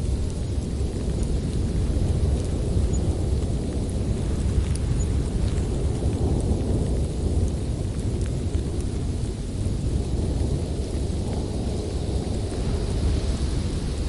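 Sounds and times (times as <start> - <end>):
faint ticks: 0.0 - 9.3
storm rumbling: 0.0 - 14.0.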